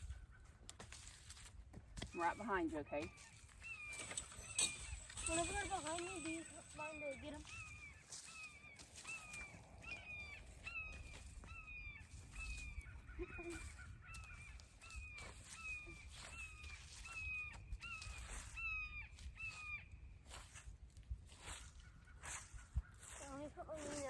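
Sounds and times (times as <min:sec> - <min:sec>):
bird calling: 0:02.1 - 0:20.0.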